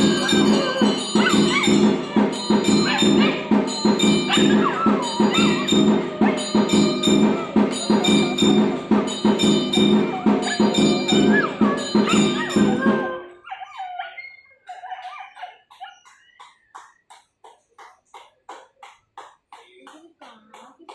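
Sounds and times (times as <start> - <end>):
devotional music with bells: 0.0 - 13.4
dog howling: 0.0 - 16.2.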